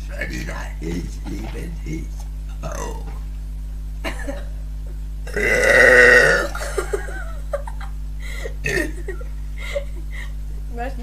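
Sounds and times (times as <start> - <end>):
woman burping loudly: 2.6 - 3.2, 5.3 - 6.8, 8.6 - 9.2.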